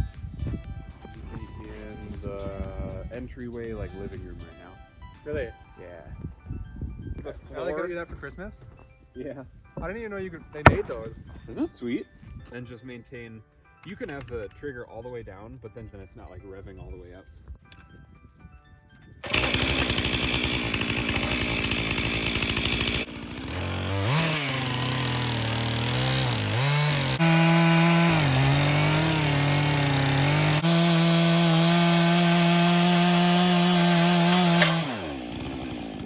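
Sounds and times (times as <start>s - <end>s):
chainsaw cutting log: 10.6s - 11.1s, 19.2s - 36.0s.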